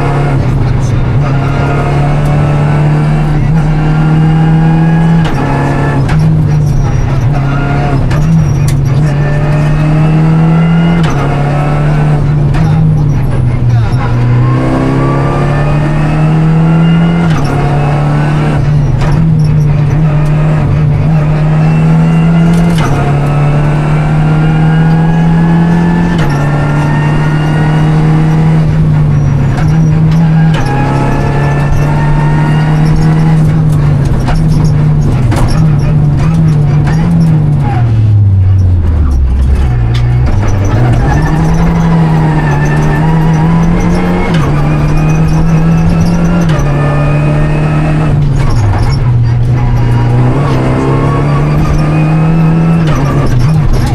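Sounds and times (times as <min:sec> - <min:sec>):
car engine revving through gears: 0:00.0 - 0:53.9
road knocks and clatter: 0:05.1 - 0:10.0, 0:18.4 - 0:21.2, 0:28.2 - 0:53.9.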